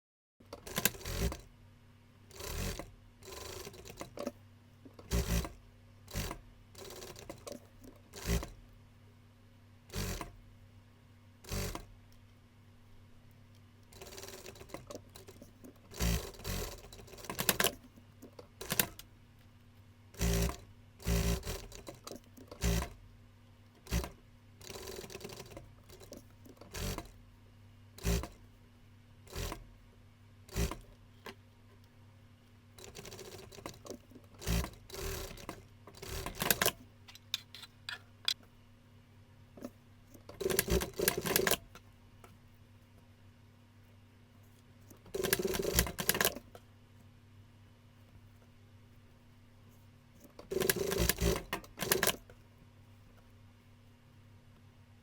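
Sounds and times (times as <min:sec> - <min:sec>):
faint steady hum: 0:00.4 - 0:55.0
sewing machine stitching: 0:00.5 - 0:01.5, 0:02.3 - 0:04.4, 0:05.0 - 0:08.6, 0:09.9 - 0:10.4, 0:11.4 - 0:11.9, 0:14.0 - 0:17.9, 0:18.6 - 0:19.0, 0:20.2 - 0:23.0, 0:23.8 - 0:27.2, 0:28.0 - 0:28.4, 0:29.3 - 0:29.6, 0:30.5 - 0:30.9, 0:32.8 - 0:36.8, 0:40.3 - 0:41.6, 0:45.1 - 0:46.5, 0:50.3 - 0:52.2.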